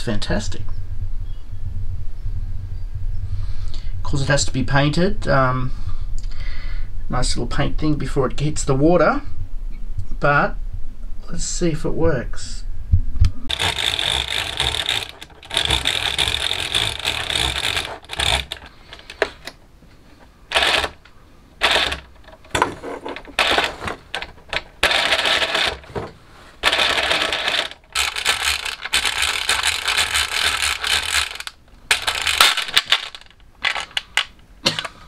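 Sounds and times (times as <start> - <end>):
toy rowing mechanism clattering: 13.5 - 19.6, 20.5 - 34.3.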